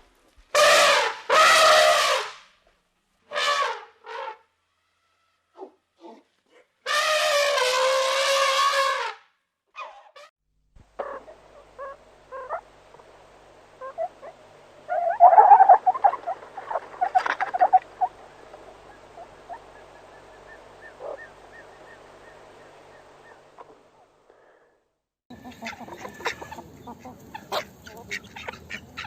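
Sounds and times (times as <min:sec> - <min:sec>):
chattering animal calls: 0:13.8 - 0:18.2.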